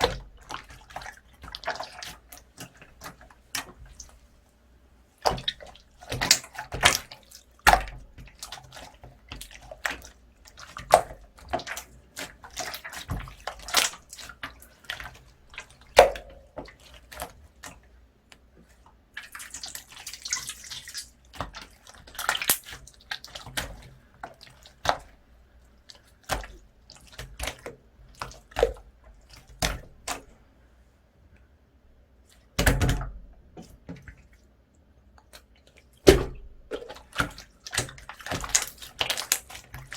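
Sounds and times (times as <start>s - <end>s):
slime wet sticky pops: 15.9s - 16.5s.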